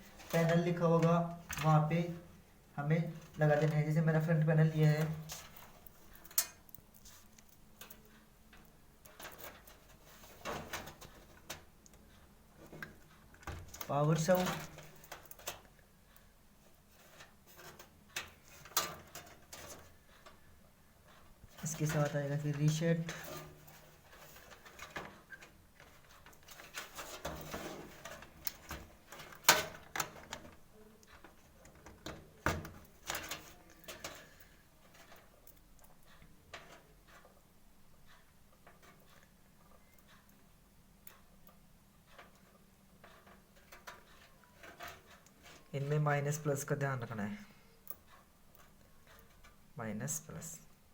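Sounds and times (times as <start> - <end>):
rustling of plastic leads: 0.0 - 37.3.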